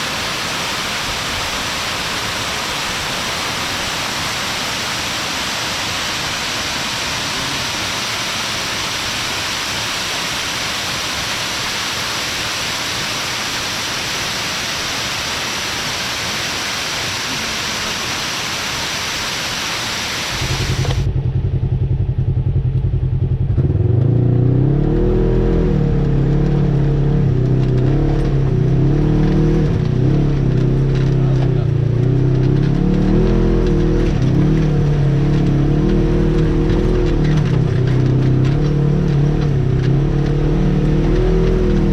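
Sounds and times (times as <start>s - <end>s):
waterfall rushing: 0.0s - 21.0s
off-road vehicle engine revving: 20.3s - 41.9s.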